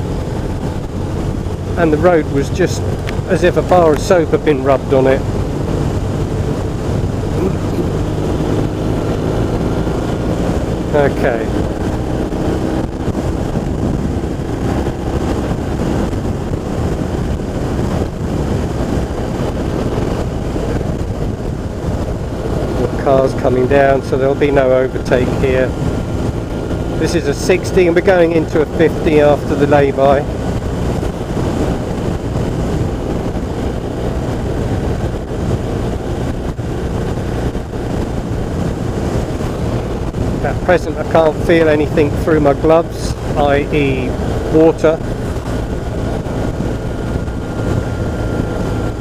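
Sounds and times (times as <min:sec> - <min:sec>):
motorcycle engine droning: 0:00.0 - 0:49.0
tyres on wet road: 0:00.0 - 0:49.0
wind rushing over microphone: 0:00.0 - 0:49.0.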